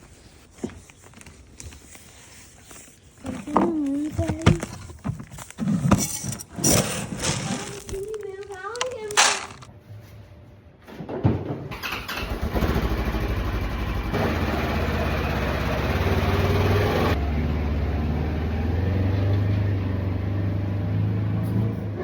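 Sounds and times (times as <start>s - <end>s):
engine starting and running: 11.7s - 21.9s.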